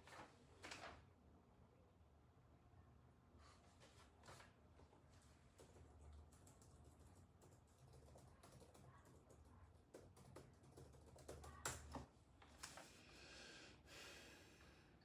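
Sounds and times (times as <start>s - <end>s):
typing on computer keyboard: 5.5s - 12.1s.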